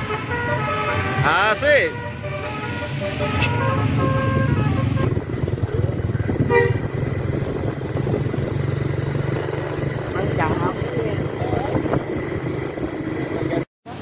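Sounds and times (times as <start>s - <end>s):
musical air horn notes: 0.0s - 5.2s, 6.4s - 6.9s.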